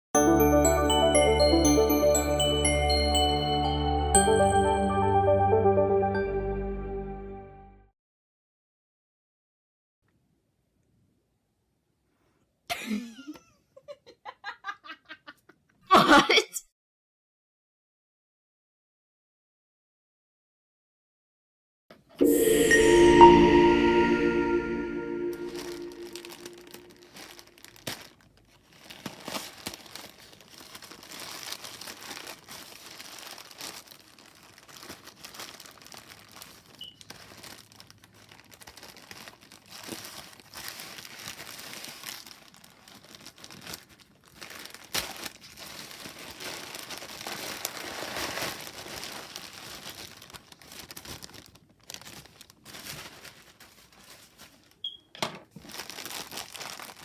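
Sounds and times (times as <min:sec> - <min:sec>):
packaging crinkling and rustling: 0:26.9 - 0:57.0
packaging tearing: 0:27.1 - 0:54.7, 0:55.6 - 0:57.0.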